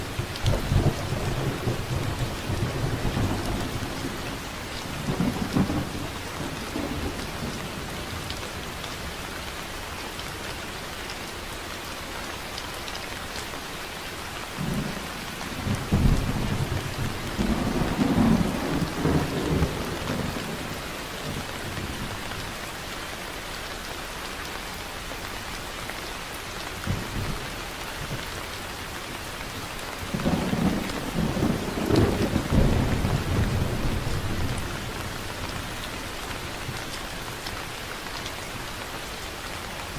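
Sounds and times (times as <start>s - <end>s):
heavy rain falling: 0.0s - 39.9s
thunder rumbling: 0.4s - 7.8s, 14.6s - 21.3s, 30.1s - 35.8s.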